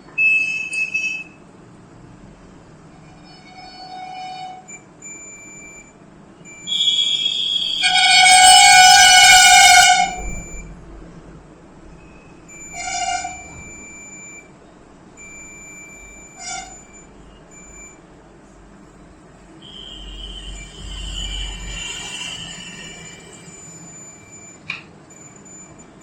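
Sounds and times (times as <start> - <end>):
multimeter continuity buzzer: 6.6 - 7.9.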